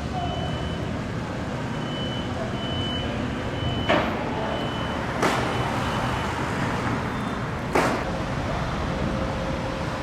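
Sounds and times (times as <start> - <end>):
street traffic noise: 0.0 - 10.0
sharp bangs: 5.1 - 5.7, 7.7 - 8.1.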